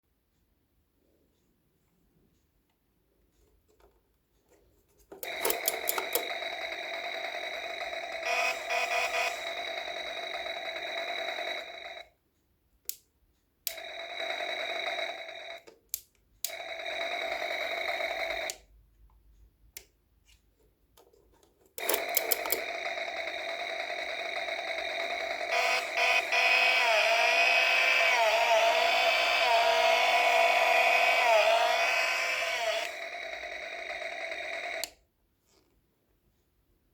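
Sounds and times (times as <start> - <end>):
toy chainsaw electronic engine sound: 5.2 - 12.1, 13.7 - 15.6, 16.5 - 18.6, 21.8 - 35.0
short electronic blips: 8.2 - 10.4, 24.5 - 34.9.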